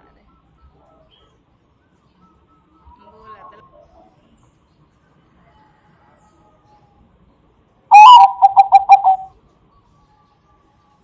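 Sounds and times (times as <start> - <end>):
dove cooing: 7.9 - 9.3.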